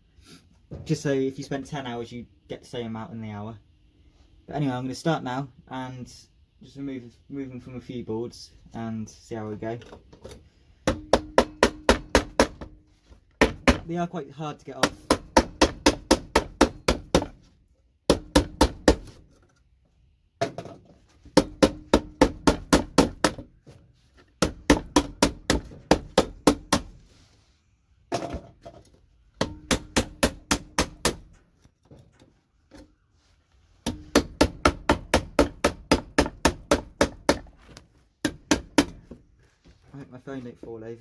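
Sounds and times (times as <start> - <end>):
hammer striking metal tool: 29.4 - 31.2.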